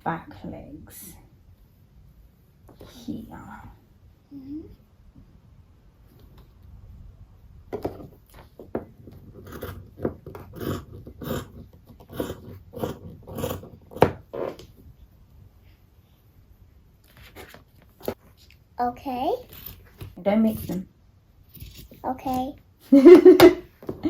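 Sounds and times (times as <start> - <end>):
scissors snipping fabric: 9.4 - 14.2.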